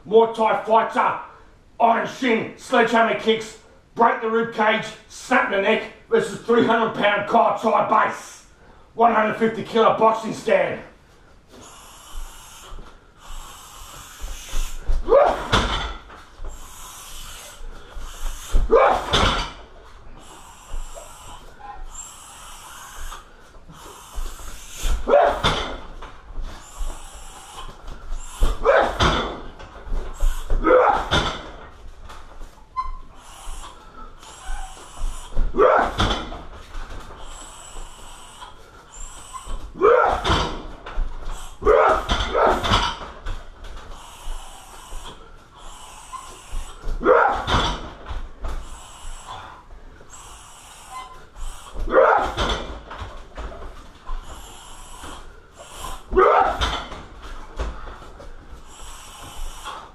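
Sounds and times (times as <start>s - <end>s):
person grunting: 15.0s - 15.9s, 18.6s - 19.5s, 24.8s - 25.7s, 28.4s - 29.3s, 30.4s - 31.4s, 35.5s - 36.3s, 39.7s - 40.6s, 41.6s - 42.8s, 47.0s - 47.7s, 51.9s - 52.5s, 56.1s - 56.8s.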